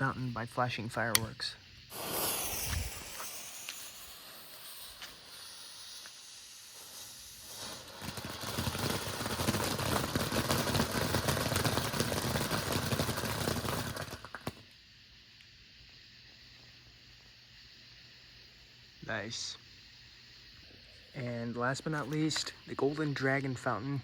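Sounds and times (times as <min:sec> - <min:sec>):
firework fountain crackling hiss: 0:00.0 - 0:24.0
firework pops: 0:01.9 - 0:14.7.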